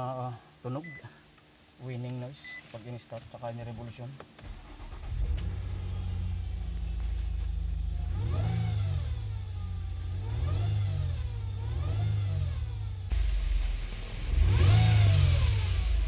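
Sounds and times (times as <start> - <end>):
car engine revving: 4.4 - 16.0
transmission whine: 11.3 - 16.0.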